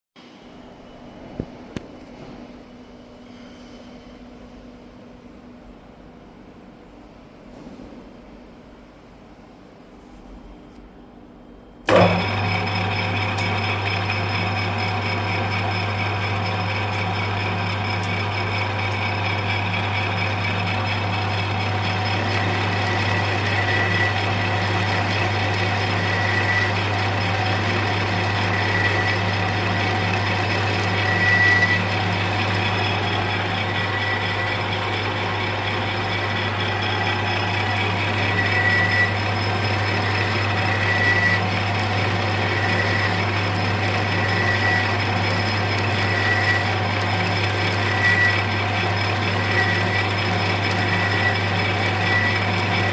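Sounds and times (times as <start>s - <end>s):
lathe motor hum: 11.9s - 52.9s.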